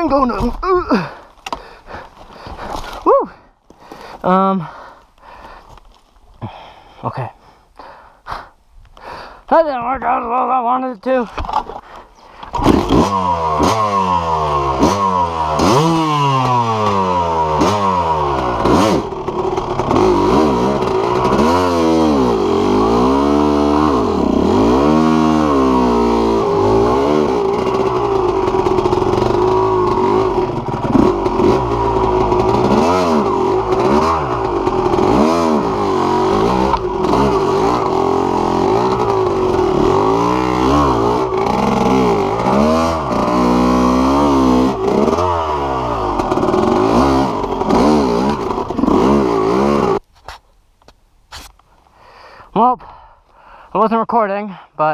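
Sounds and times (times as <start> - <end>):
dirt bike engine revving: 12.5 - 50.0.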